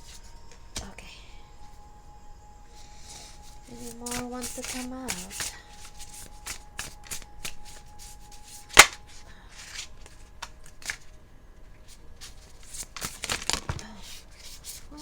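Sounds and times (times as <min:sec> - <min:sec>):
cards being shuffled: 0:02.7 - 0:11.2, 0:11.8 - 0:15.0
sharp card snap: 0:03.8 - 0:11.0, 0:12.6 - 0:13.8.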